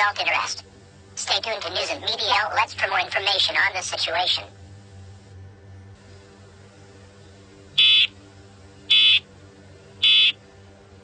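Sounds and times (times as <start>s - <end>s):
faint steady hum: 0.0s - 11.0s
buzzy digital squawks: 7.8s - 8.1s, 8.9s - 9.3s.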